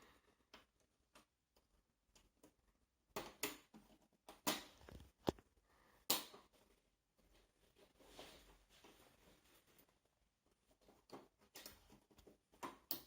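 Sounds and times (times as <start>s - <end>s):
soft rustle: 6.5s - 12.6s.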